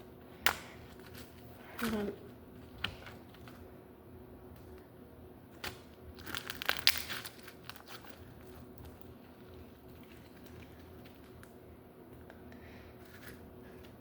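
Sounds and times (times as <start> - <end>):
slime crackling and popping: 5.6 - 11.5.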